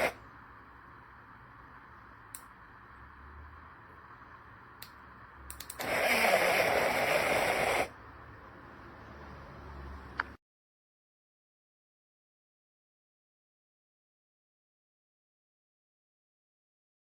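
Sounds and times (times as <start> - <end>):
blender clicks: 5.5 - 7.9
blender whirring: 5.8 - 8.0.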